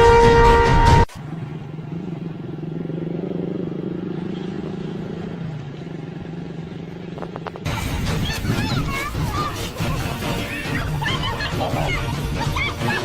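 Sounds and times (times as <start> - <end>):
music: 0.0 - 1.1, 7.7 - 13.0
vehicle engine idling: 1.1 - 13.0.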